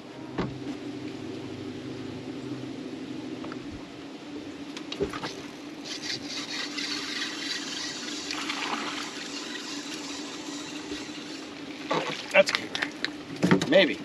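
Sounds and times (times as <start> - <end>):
steady low hum: 0.0 - 14.0
water splashing and trickling: 5.0 - 13.1.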